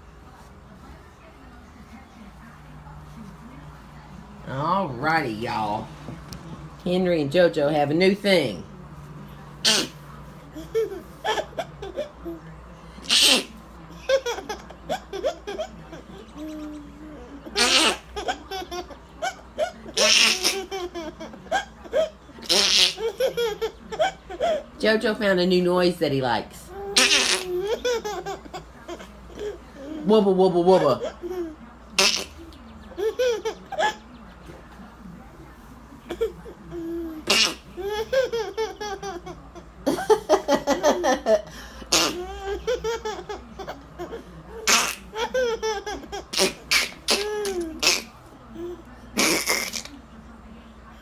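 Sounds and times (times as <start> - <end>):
sneeze-like hiss: 13.0 - 13.5, 37.3 - 37.6, 46.4 - 48.1, 49.2 - 49.9.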